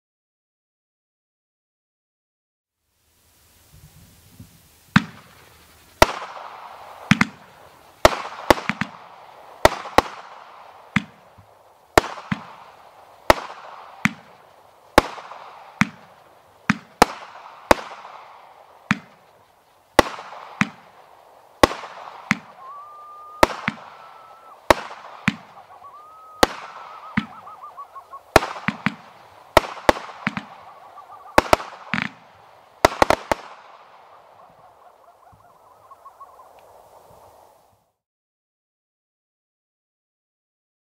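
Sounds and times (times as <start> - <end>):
fireworks bangs with crackle: 3.7 - 37.6
short whistling tone: 22.4 - 24.6, 25.3 - 28.3.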